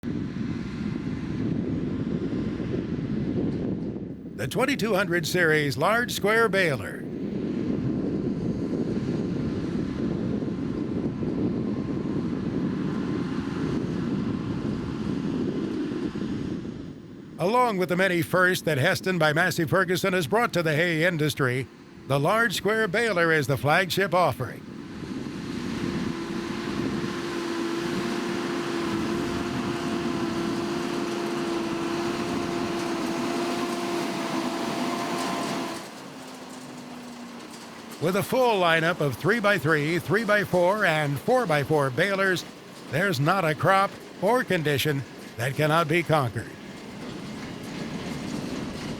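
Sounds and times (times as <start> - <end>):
wind on microphone: 0.0 - 4.6, 7.1 - 17.3, 24.7 - 35.8
constant whining tone: 0.0 - 48.9
tractor and baler rumbling: 0.0 - 48.9.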